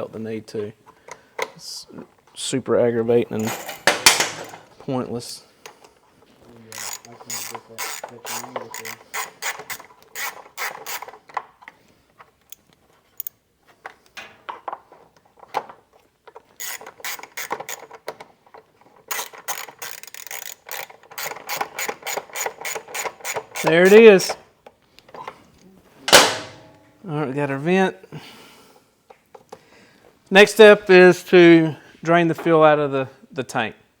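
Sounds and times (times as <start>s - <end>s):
ratchet wrench clicking: 6.8s - 11.1s, 16.6s - 17.9s, 19.1s - 24.0s.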